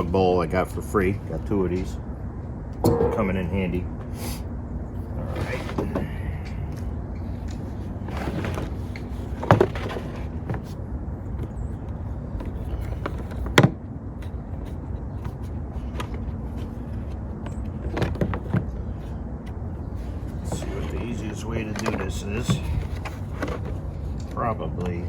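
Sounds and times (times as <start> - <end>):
steady low rumble: 2.8 - 4.4.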